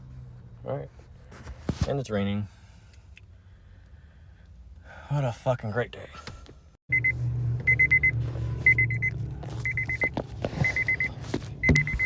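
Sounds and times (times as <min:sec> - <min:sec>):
electronic warning chime beeping: 0:06.9 - 0:12.0.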